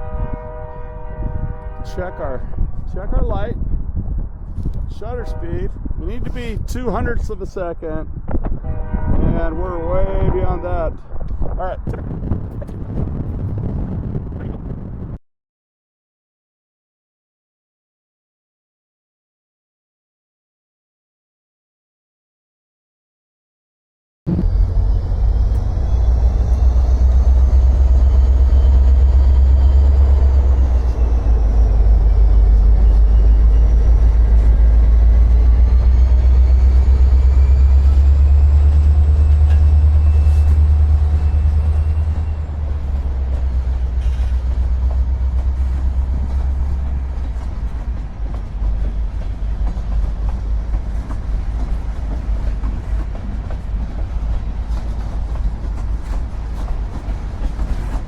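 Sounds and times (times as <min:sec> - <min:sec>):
train rumbling past: 0:00.0 - 0:15.2, 0:24.3 - 0:58.0
faint high wavering squeals: 0:24.4 - 0:34.8.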